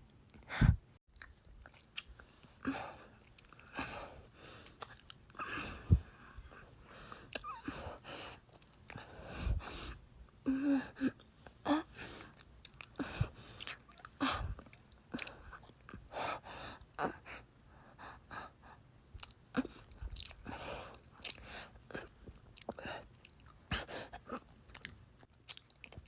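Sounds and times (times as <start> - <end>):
breaths: 2.6 - 4.8, 5.4 - 11.1, 13.0 - 14.6.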